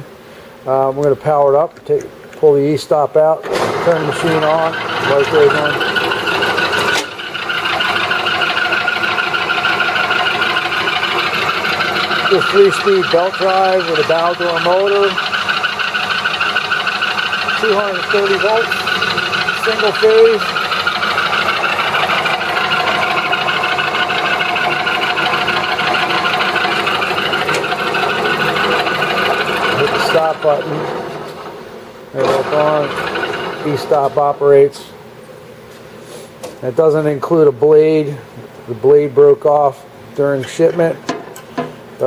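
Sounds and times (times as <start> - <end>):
band saw motor humming: 3.4 - 34.5.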